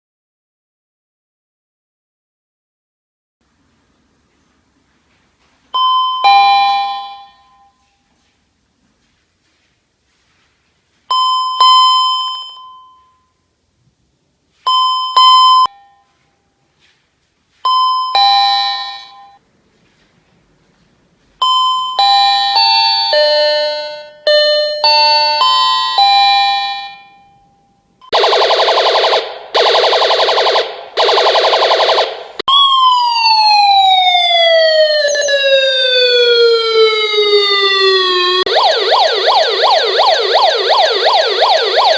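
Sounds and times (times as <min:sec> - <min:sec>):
ding-dong chimes: 0:05.8 - 0:08.0, 0:11.1 - 0:13.5, 0:21.4 - 0:28.0
warbling siren tone: 0:28.1 - 0:41.9
tone gliding downward: 0:28.2 - 0:41.9.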